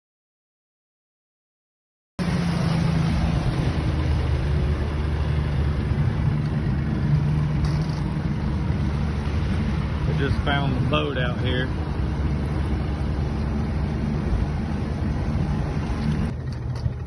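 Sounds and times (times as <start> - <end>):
motorboat engine running: 2.2 - 17.0
water noise: 2.2 - 17.0
wind: 2.2 - 17.0.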